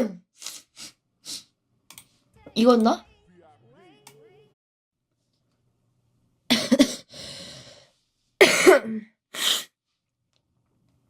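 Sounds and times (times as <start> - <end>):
woman coughing: 6.5 - 7.1, 8.4 - 9.7
woman drawing breath: 7.1 - 8.0.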